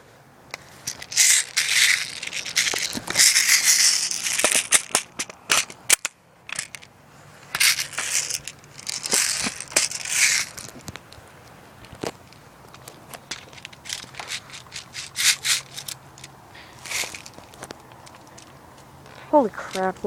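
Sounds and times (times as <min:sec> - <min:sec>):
dry leaves rustling and crunching: 0:00.6 - 0:05.9, 0:07.6 - 0:11.2.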